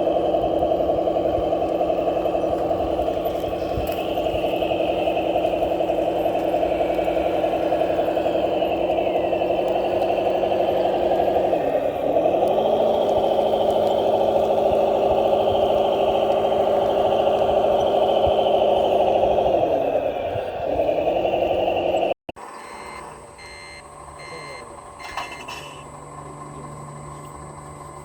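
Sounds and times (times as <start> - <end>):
model vehicle motor drone: 0.0 - 28.0.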